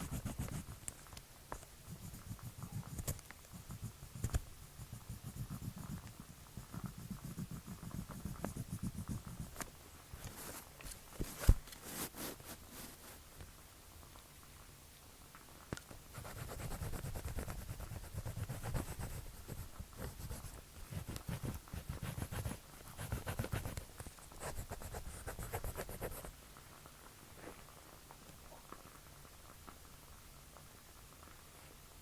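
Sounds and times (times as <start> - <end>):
pencil scratching on paper: 0.0 - 0.8, 1.9 - 9.6, 16.2 - 26.3.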